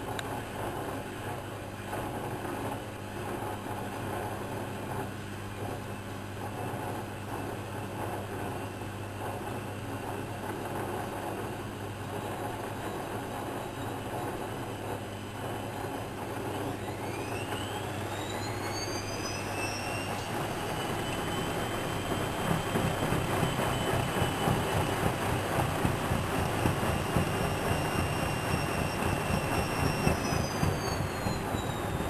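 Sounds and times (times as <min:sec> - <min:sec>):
washing machine humming: 0:00.0 - 0:32.0
washing machine motor whine: 0:00.0 - 0:32.0.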